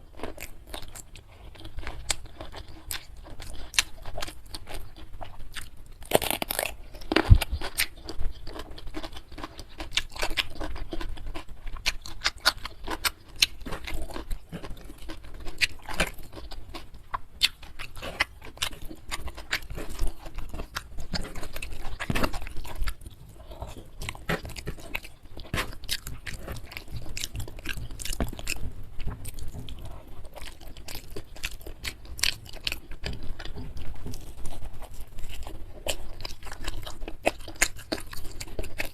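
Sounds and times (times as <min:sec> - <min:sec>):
chewing and crunching food: 0:00.0 - 0:38.9.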